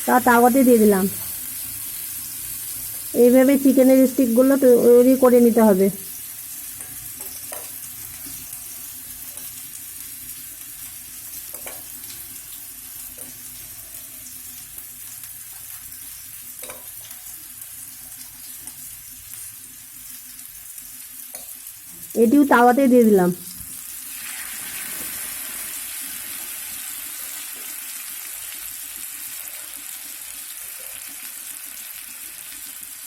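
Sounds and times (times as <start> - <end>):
chicken sizzling in oil: 0.0 - 33.0.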